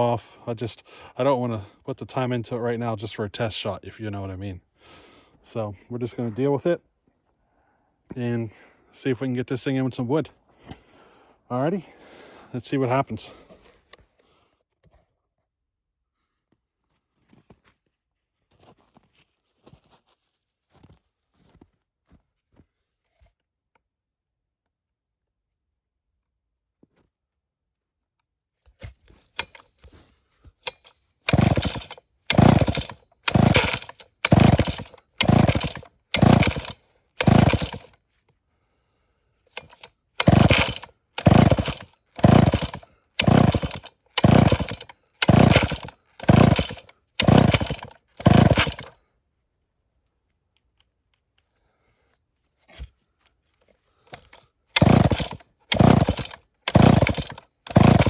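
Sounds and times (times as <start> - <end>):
chainsaw bursts: 29.4 - 29.6, 30.7 - 38.0, 39.6 - 48.9, 54.1 - 58.0.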